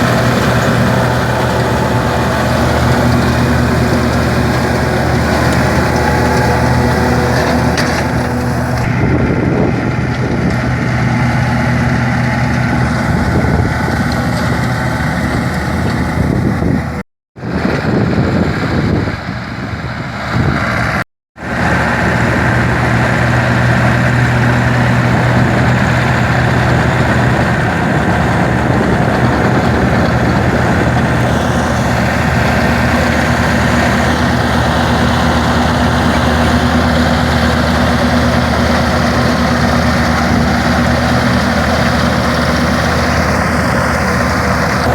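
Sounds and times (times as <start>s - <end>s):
straw chopper rushing noise: 0.0s - 18.9s, 20.6s - 44.9s
tractor engine running: 0.0s - 44.9s.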